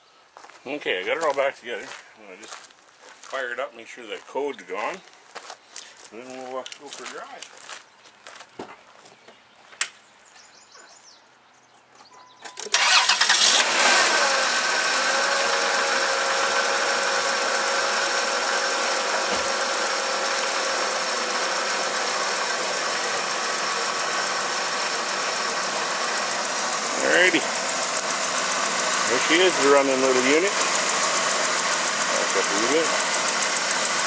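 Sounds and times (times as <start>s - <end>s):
car engine cranking and idling: 12.5s - 34.0s.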